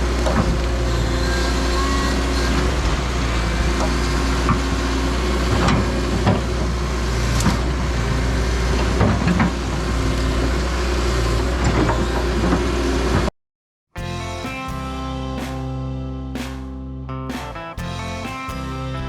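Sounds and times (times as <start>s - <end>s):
heavy equipment engine running: 0.0s - 13.3s, 17.3s - 19.0s
music with plucked guitar: 14.0s - 19.0s.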